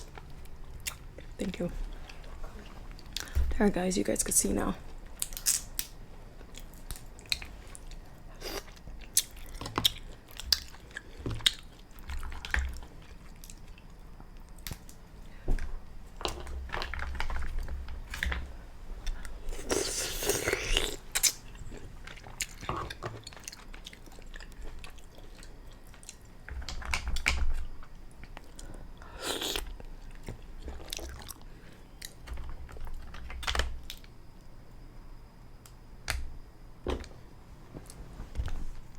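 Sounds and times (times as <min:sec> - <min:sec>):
person chewing mussels: 0:06.5 - 0:14.8, 0:19.0 - 0:34.0.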